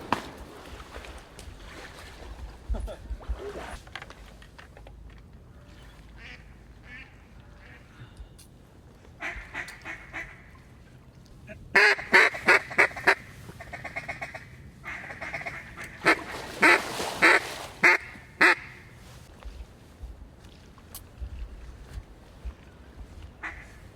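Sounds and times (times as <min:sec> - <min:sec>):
duck call feed chatter: 0:11.5 - 0:18.8.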